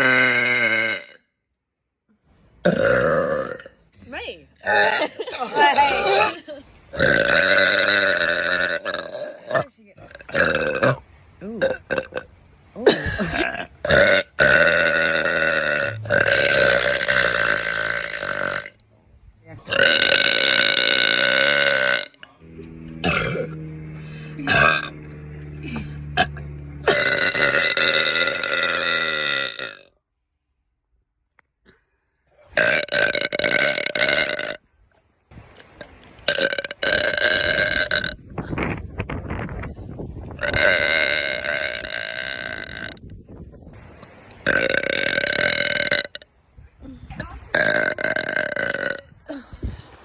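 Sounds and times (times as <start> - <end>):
person burping loudly: 0.0 - 1.3, 2.6 - 3.9, 4.6 - 18.8, 19.6 - 30.0, 32.4 - 34.6, 36.2 - 38.8, 40.3 - 43.2, 44.4 - 46.3, 47.2 - 49.7.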